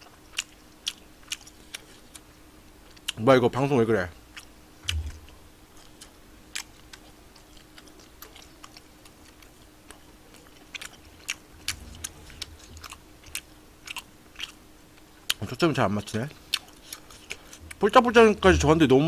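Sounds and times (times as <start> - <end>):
person chewing food: 0.0 - 3.2, 4.3 - 15.4, 16.3 - 17.8
faint steady hum: 0.0 - 19.0
soft low thumps: 4.8 - 5.5, 11.5 - 13.5, 17.6 - 19.0
wet mouth clicks and smacks: 4.9 - 5.3.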